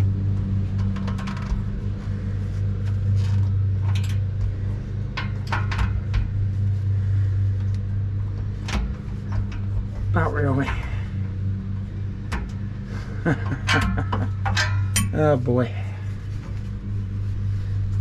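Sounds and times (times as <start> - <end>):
steady low hum: 0.0 - 18.0
wrench clinking on metal clamp: 13.7 - 15.2.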